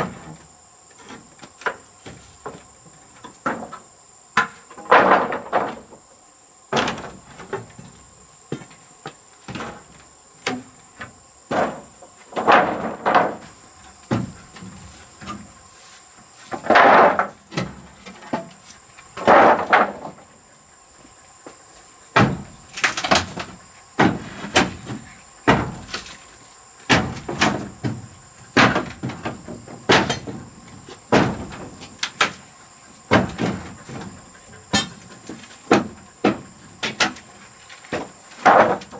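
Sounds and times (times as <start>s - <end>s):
knocks and scrapes of repair work: 6.7s - 20.3s, 22.2s - 38.9s.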